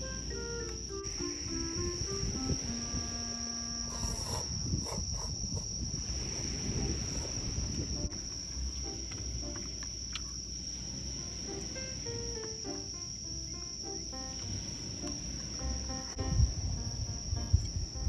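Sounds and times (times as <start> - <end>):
background music: 0.0 - 4.0, 6.8 - 10.1, 11.0 - 18.0
insects chirring: 0.0 - 18.0
low rumble: 0.0 - 18.0.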